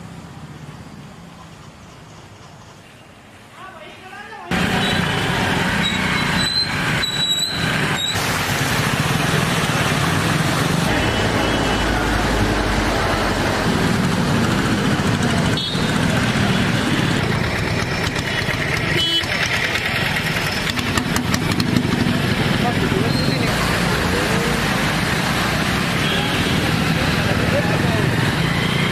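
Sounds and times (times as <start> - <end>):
steady traffic noise: 0.0 - 28.9
vehicle engines running: 4.5 - 28.9.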